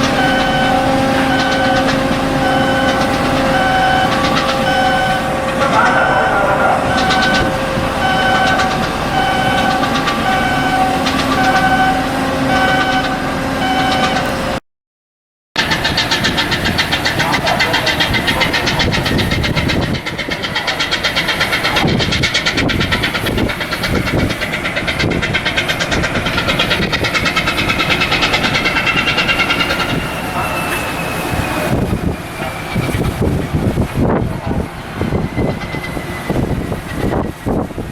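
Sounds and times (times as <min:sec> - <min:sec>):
steady hum: 0:00.0 - 0:13.6
engine running: 0:00.0 - 0:14.6, 0:15.6 - 0:37.9
electronic beeping: 0:02.4 - 0:14.3.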